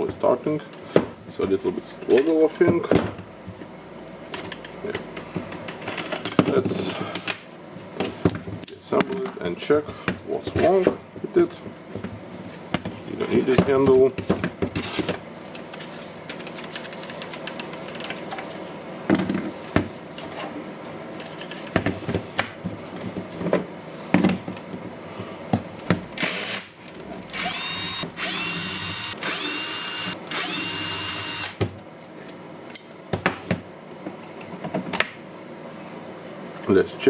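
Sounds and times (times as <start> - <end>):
cordless screwdriver whirring: 25.9 - 31.6.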